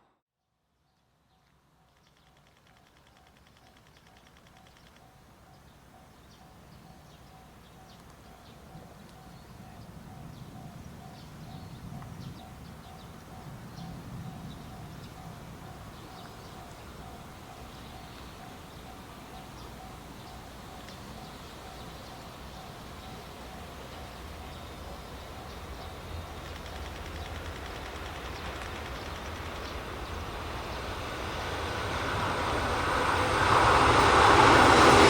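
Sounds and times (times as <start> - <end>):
freight train rumble: 5.1 - 35.0.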